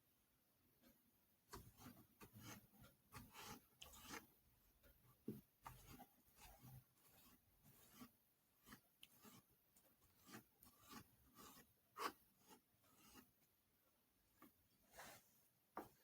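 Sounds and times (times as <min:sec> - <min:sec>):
hands scraping food and utensils: 0:01.5 - 0:04.3, 0:05.6 - 0:13.4.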